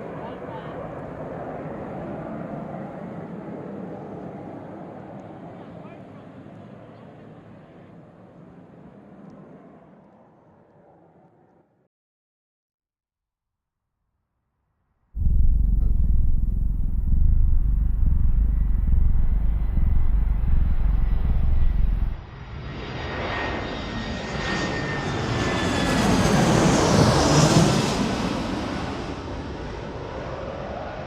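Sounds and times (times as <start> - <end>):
deep steady jet rumble: 15.2 - 22.3
jet plane flying past: 15.2 - 31.0.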